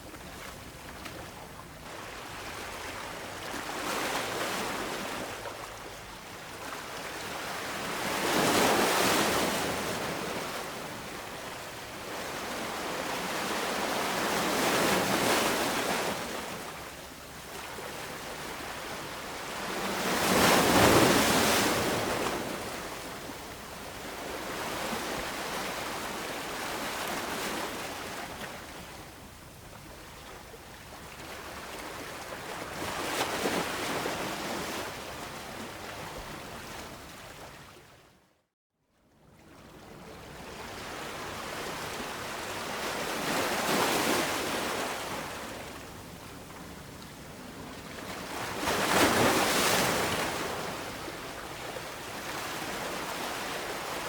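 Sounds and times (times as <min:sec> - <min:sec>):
ocean waves breaking on shore: 0:01.9 - 0:05.8, 0:06.5 - 0:16.9, 0:17.5 - 0:29.6, 0:39.8 - 0:54.0.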